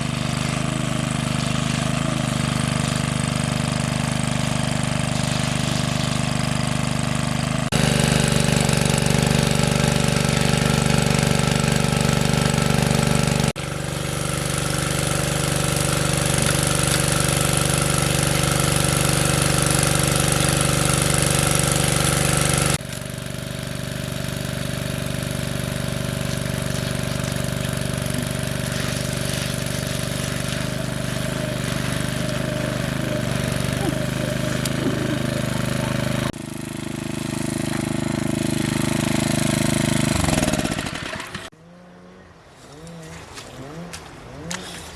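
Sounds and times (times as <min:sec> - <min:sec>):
water pump engine running: 0:00.0 - 0:41.6, 0:42.8 - 0:44.9.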